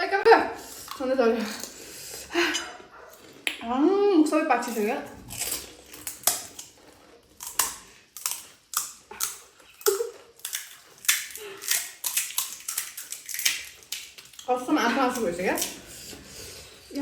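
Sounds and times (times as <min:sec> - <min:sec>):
crunchy food being chewed: 0:00.6 - 0:03.6, 0:04.7 - 0:16.9.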